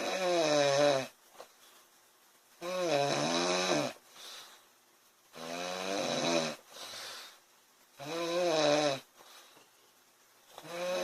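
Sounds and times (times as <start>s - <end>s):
woman snoring: 0.0s - 1.1s, 2.6s - 4.0s, 5.3s - 6.6s, 8.0s - 9.1s, 10.6s - 11.0s
soft breath: 4.0s - 4.8s, 6.6s - 7.5s, 9.2s - 9.8s.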